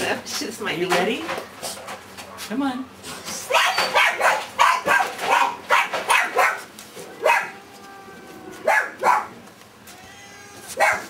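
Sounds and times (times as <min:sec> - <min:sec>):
dog barking: 0:03.5 - 0:07.6, 0:08.6 - 0:09.4, 0:10.8 - 0:11.0.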